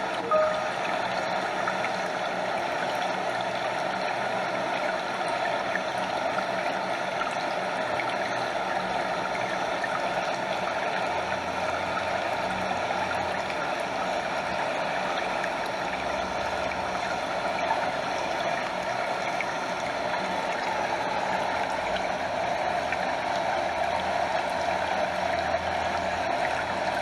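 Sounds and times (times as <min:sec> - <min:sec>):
stream water flowing: 0:00.0 - 0:27.0.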